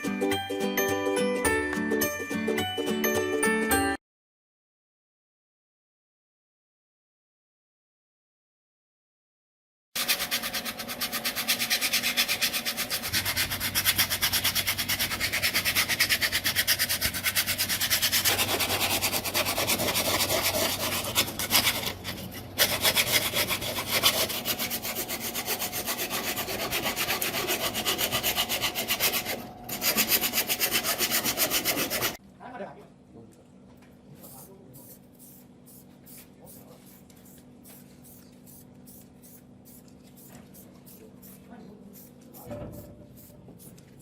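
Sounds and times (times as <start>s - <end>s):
fast rubbing or scraping strokes: 10.0s - 32.2s.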